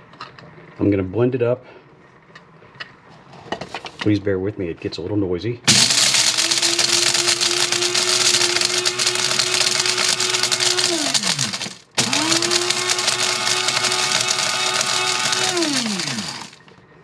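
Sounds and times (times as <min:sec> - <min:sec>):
coffee grinder grinding kernels: 0:05.7 - 0:16.7.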